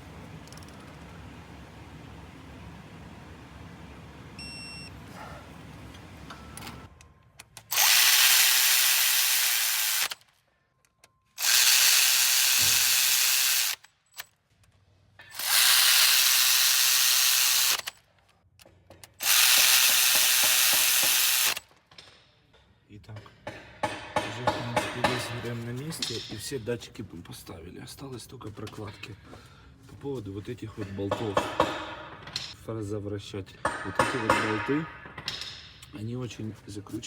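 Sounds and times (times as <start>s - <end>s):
power tool running: 7.7s - 10.2s, 11.4s - 13.8s, 15.3s - 17.9s, 19.2s - 21.6s.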